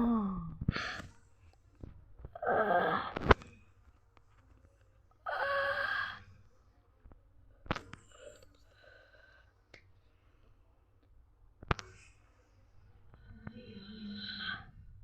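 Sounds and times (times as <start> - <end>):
person wailing and moaning: 0.0 - 0.6.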